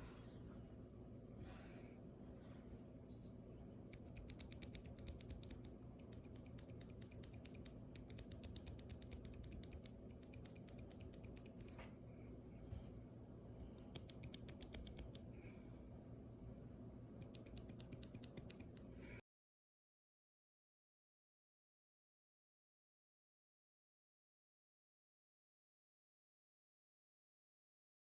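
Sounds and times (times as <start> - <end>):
mechanical keyboard clacking: 4.0 - 11.8, 13.8 - 15.2, 17.2 - 18.8.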